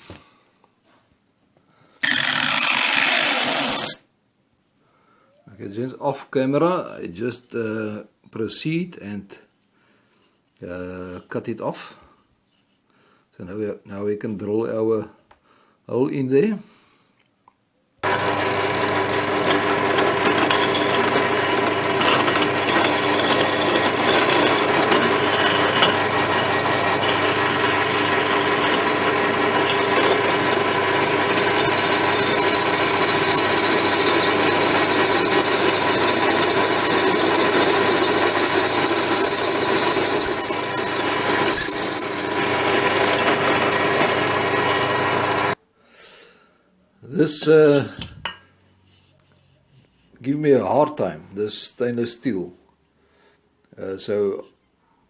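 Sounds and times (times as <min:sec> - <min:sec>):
electric drill grinding on metal: 0:02.0 - 0:04.0, 0:18.0 - 0:45.6
high squeal of drill bit: 0:02.0 - 0:04.0, 0:18.1 - 0:45.5.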